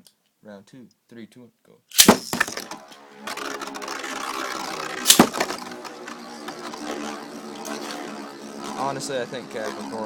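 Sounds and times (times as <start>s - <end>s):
spinning tops clacking together: 1.9s - 8.1s
spinning tops whirring and scraping: 2.0s - 10.0s.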